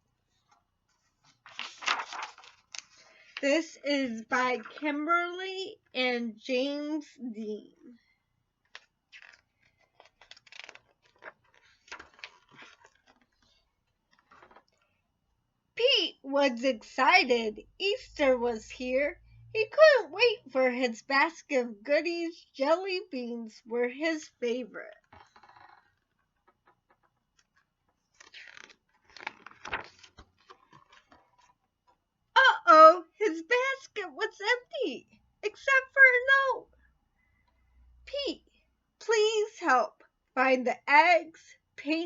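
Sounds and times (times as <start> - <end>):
paper pages rustling: 0.3 - 3.4, 4.5 - 4.9, 8.6 - 15.0, 25.0 - 32.0.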